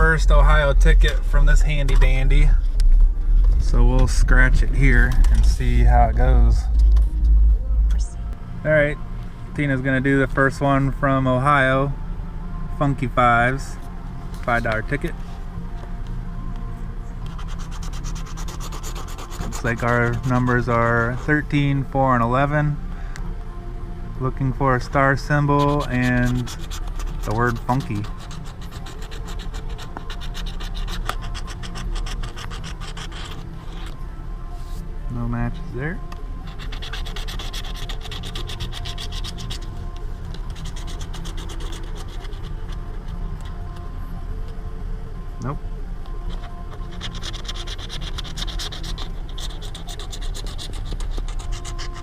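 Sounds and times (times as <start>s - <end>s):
lottery ticket being scratched: 17.3s - 20.8s, 25.4s - 34.0s, 36.4s - 39.7s, 40.3s - 43.6s, 46.3s - 52.0s.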